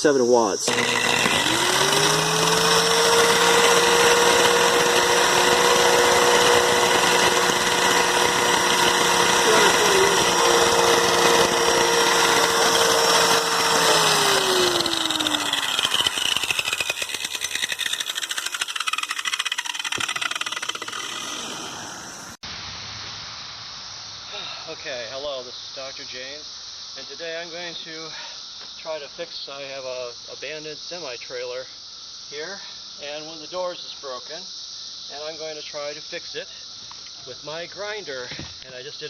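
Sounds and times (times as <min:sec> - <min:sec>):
angle grinder whining: 0:00.1 - 0:22.4
faint steady hiss: 0:22.4 - 0:39.0.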